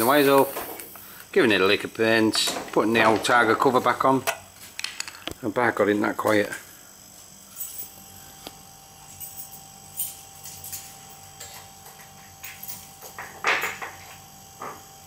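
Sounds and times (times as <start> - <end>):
compressor motor humming: 0.0 - 15.0.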